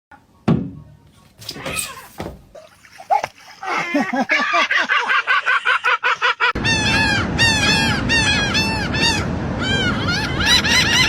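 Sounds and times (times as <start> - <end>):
gulls calling: 1.5 - 11.0
wind or surf rushing: 6.6 - 11.0.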